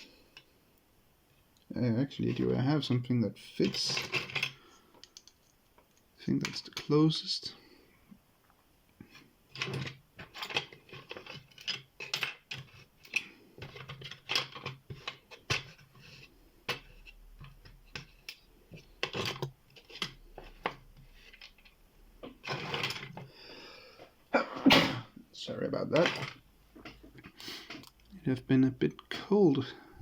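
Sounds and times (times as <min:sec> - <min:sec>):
small metal tools clicking and scraping: 0:03.6 - 0:06.9, 0:09.1 - 0:21.8.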